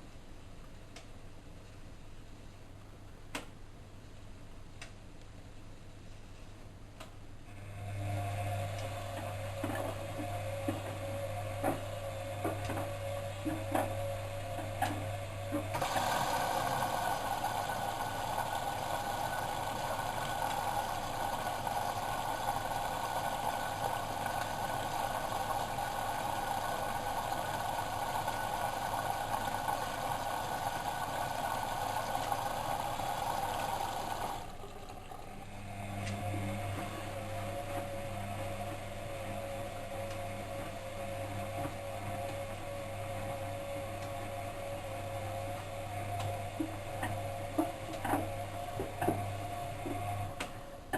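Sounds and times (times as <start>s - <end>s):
washing machine hum: 7.4s - 50.9s
water rushing into machine: 7.6s - 35.7s.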